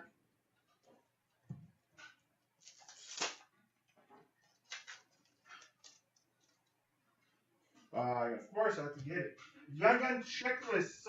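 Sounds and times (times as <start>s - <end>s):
cards rustling and clicking: 2.0s - 3.6s, 4.4s - 6.7s.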